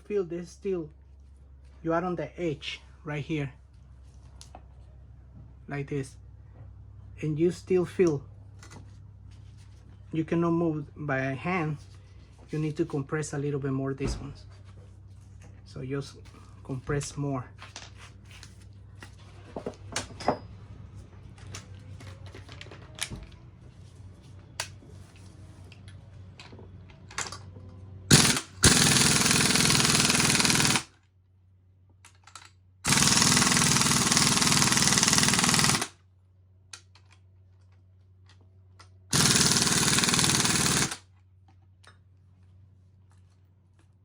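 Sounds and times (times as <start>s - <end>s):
impact wrench bursts: 28.1s - 31.0s, 32.8s - 36.0s, 39.1s - 41.0s
tool handling clicks: 32.0s - 32.6s, 36.7s - 39.0s.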